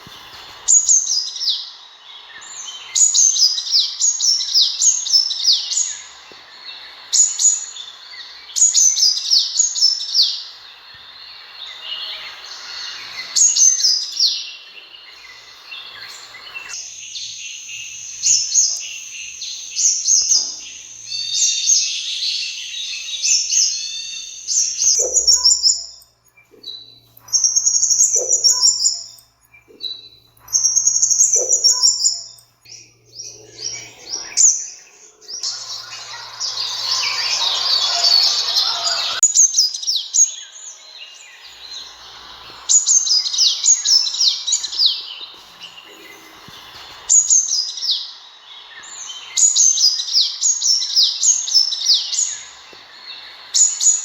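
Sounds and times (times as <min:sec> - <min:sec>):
bird twittering chirps and trills: 0:00.0 - 0:54.0.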